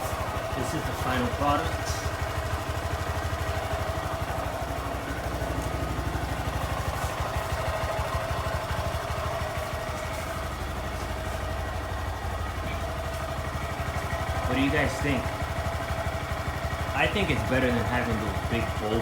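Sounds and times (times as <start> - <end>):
motorcycle engine idling: 0.0 - 19.0.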